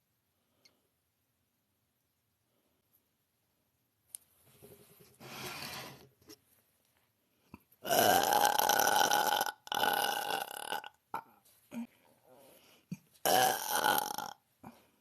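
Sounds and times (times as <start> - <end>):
woman belching: 7.8 - 11.3, 13.2 - 14.4.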